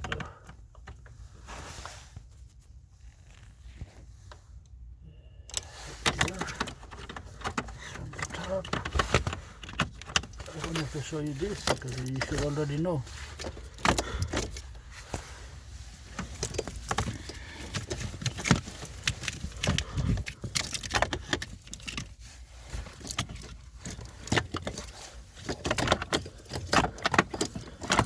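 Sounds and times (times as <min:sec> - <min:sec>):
plastic connectors clicking and rattling: 0:05.5 - 0:15.3, 0:16.1 - 0:22.2, 0:22.8 - 0:28.0.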